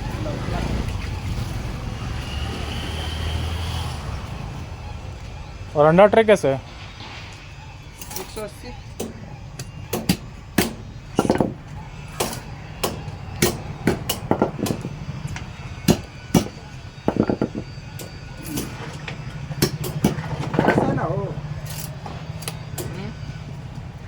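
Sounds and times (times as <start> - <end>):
sharp knocks: 9.0 - 21.0.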